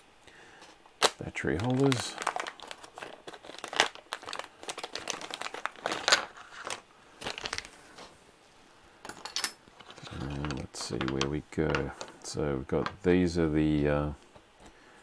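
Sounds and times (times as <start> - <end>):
plastic bag crinkling: 1.0 - 8.1.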